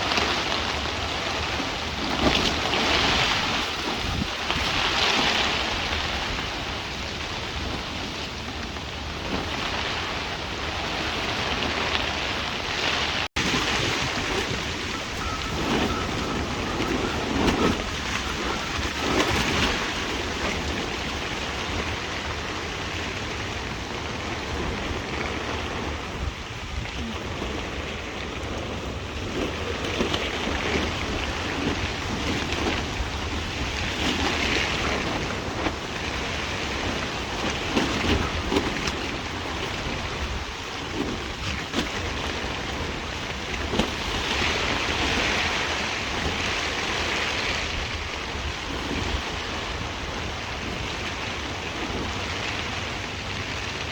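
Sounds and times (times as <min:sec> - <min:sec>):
strong gusty wind rushing: 0:00.0 - 0:53.2.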